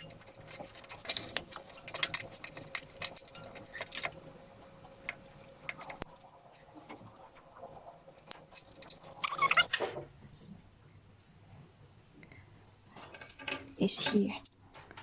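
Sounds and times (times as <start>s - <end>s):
pump parts clicking and rattling: 0.0s - 4.4s, 12.9s - 15.0s.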